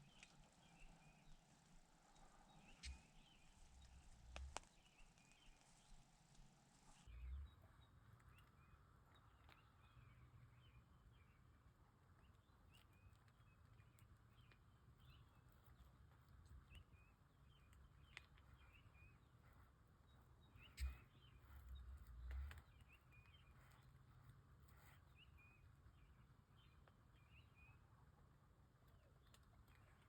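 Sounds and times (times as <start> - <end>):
small bird chirping: 2.4 - 6.0, 12.2 - 27.8.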